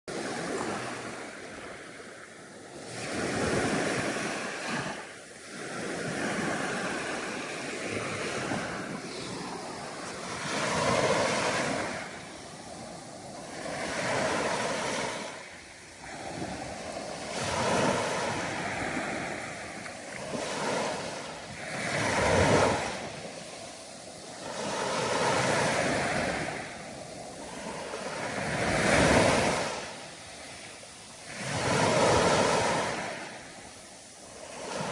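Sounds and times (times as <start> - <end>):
waves breaking: 0.1 - 34.9.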